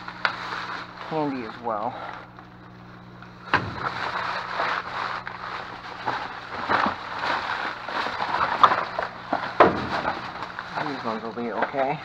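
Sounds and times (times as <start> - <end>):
steady low hum: 0.0 - 12.0
plastic candy wrappers crinkling: 3.2 - 12.0.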